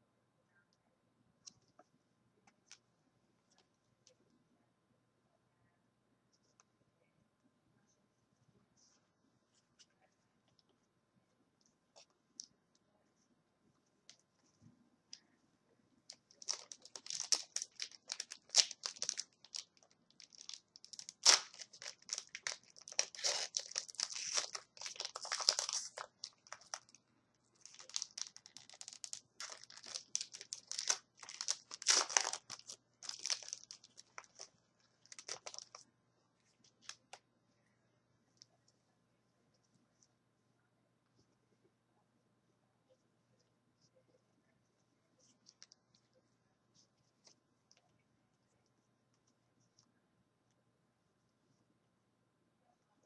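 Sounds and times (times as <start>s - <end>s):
plastic wrapper crinkling and tearing: 16.1s - 27.0s, 27.6s - 35.8s.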